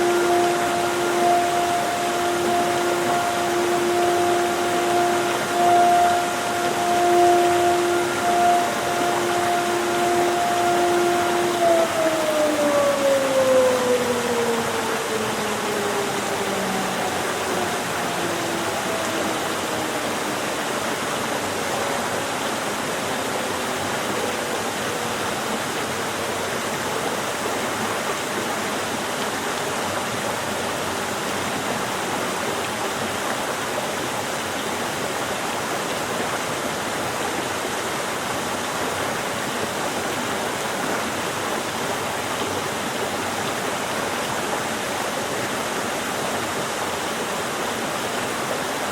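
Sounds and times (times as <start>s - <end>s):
siren falling in pitch: 0.0s - 25.2s
stream rushing over rocks: 0.0s - 48.9s.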